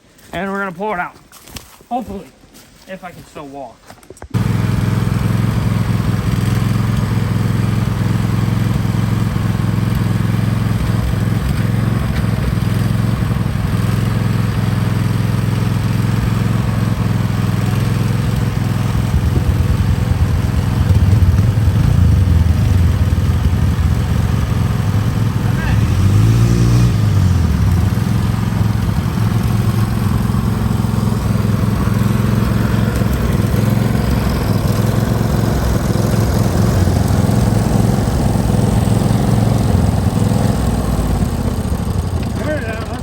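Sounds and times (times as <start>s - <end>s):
atv engine idling: 4.3s - 43.0s.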